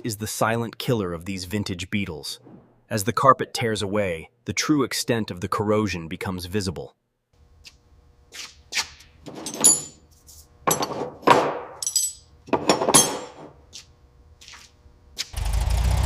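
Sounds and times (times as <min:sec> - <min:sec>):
knocks and scrapes on metal: 0:10.7 - 0:13.6.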